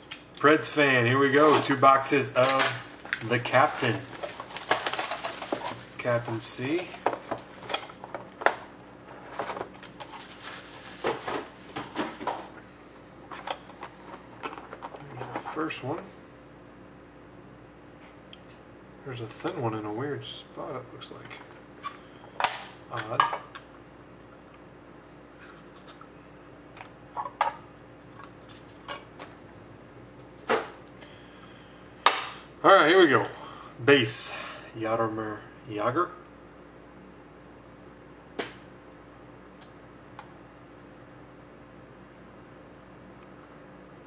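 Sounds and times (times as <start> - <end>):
packaging crinkling and rustling: 1.3 - 12.3.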